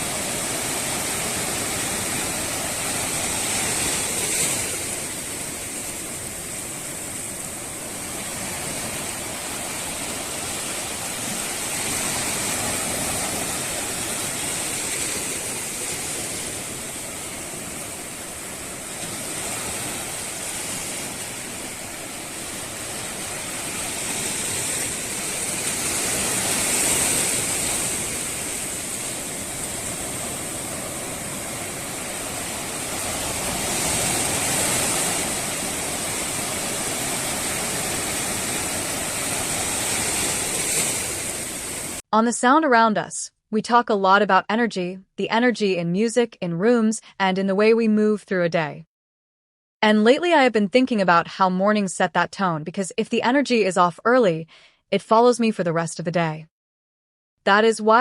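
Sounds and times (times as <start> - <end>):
rushing water: 0.0 - 42.0.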